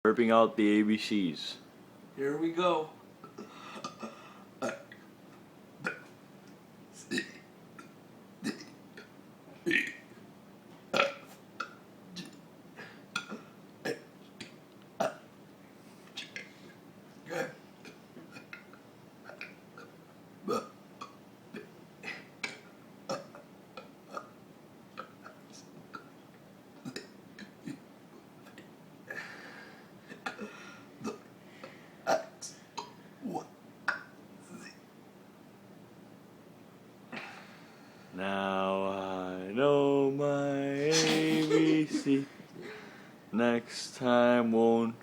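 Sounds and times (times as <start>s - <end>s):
person burping: 3.3s - 5.0s, 5.8s - 6.1s, 7.0s - 10.0s, 10.9s - 11.2s, 12.2s - 14.1s, 15.0s - 15.2s, 17.3s - 18.6s, 19.3s - 20.8s, 21.6s - 23.4s, 40.6s - 42.8s.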